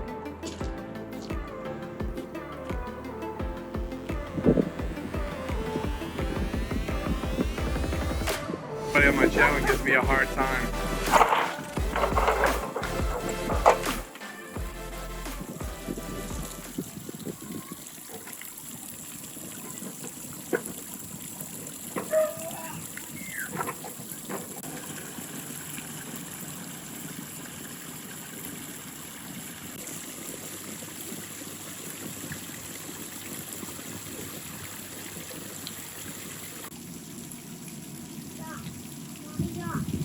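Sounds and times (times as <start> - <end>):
fountain water splashing and trickling: 9.0 - 40.0.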